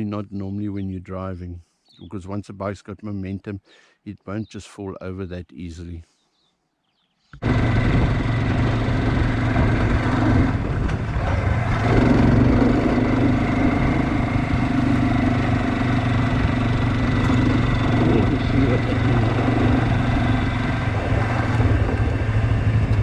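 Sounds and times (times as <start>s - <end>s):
motorcycle engine running: 7.4s - 23.0s.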